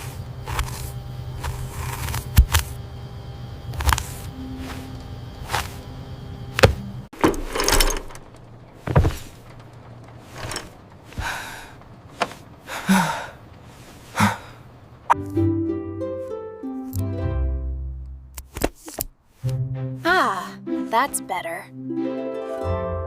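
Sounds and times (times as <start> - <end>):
sharp knocks and thuds: 6.6 - 9.8.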